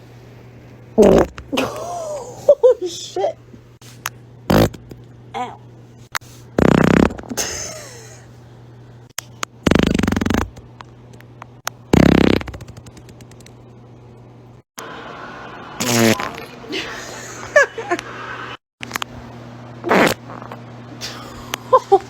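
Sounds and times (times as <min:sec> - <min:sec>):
person farting: 0:01.0 - 0:01.8, 0:04.5 - 0:04.8, 0:06.6 - 0:08.1, 0:09.6 - 0:10.6, 0:11.9 - 0:12.9, 0:15.8 - 0:16.4, 0:19.8 - 0:20.6.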